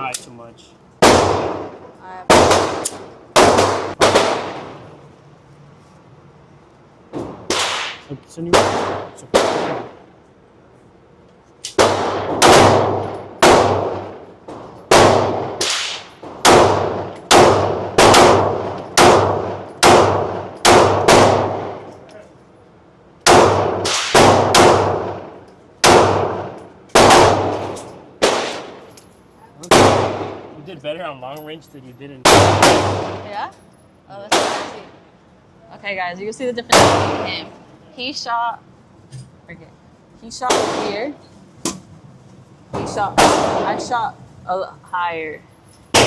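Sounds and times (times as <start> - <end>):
gunshots with ringing tail: 3.4 - 4.8, 7.5 - 10.0, 11.8 - 14.1, 14.9 - 21.9, 29.7 - 30.5, 32.3 - 33.3.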